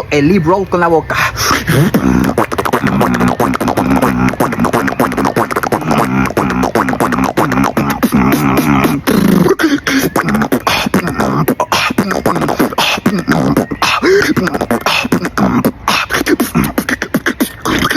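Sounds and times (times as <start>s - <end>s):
beatboxing with lip rolls: 1.0s - 17.9s.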